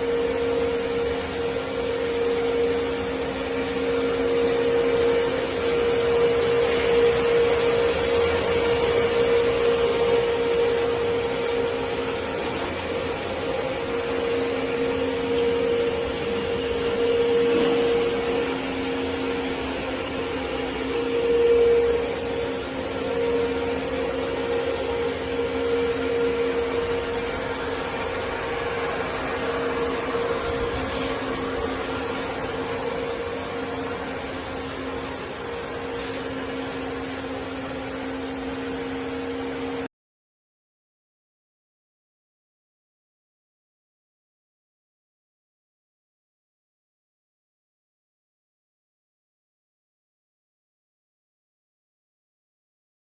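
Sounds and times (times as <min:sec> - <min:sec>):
band saw humming with hiss: 0:00.0 - 0:39.8.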